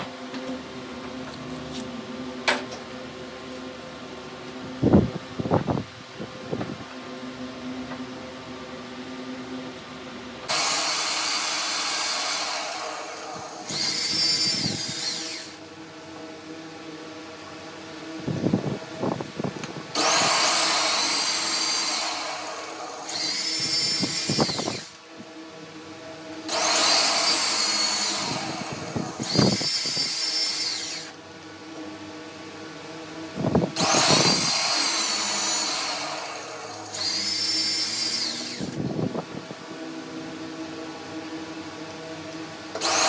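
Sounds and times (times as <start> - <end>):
power tool whining: 10.5 - 16.3, 18.2 - 31.9, 33.2 - 40.0, 42.7 - 43.0.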